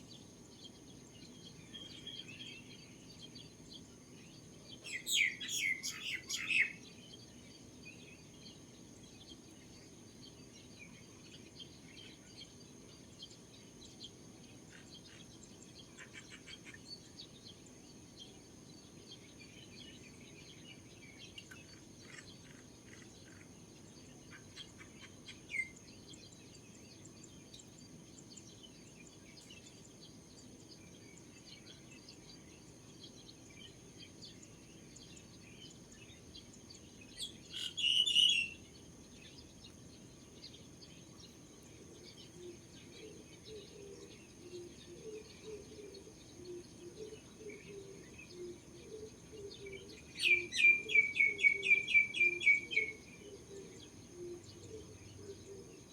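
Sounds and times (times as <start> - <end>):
small birds chirping: 0.0 - 55.9.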